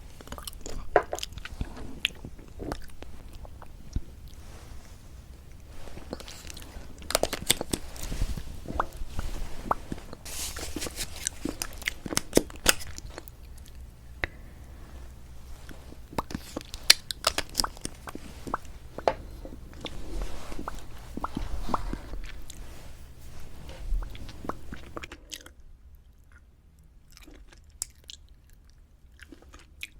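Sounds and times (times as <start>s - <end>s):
lipstick rubbing over lips: 5.8s - 13.2s, 19.8s - 25.0s.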